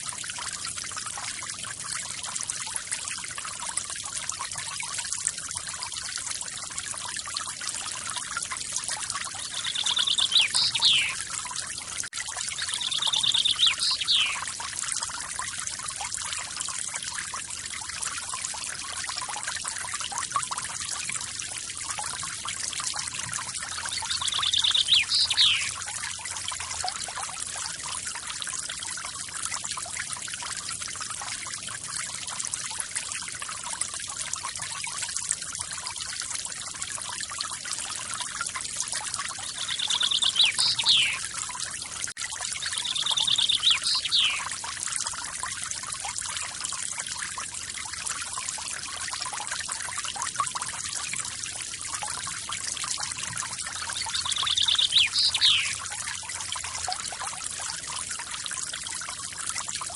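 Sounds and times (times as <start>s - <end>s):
small waterfall splashing: 0.0s - 59.9s
bird buzzy trill call: 9.6s - 11.2s, 24.3s - 25.8s, 39.6s - 41.2s, 42.8s - 44.4s, 54.0s - 55.8s.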